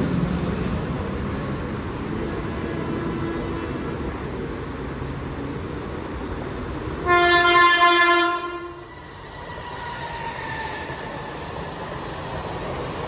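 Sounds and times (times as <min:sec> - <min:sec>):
train rumbling: 0:00.0 - 0:13.0
train horn blast: 0:06.9 - 0:09.0.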